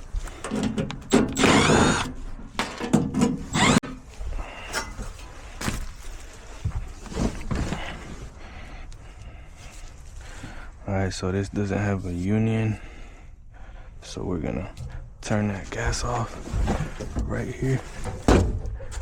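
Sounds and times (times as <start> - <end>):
tools clicking and knocking: 0.4 - 3.9
cordless drill whining: 1.1 - 2.2, 3.5 - 3.9.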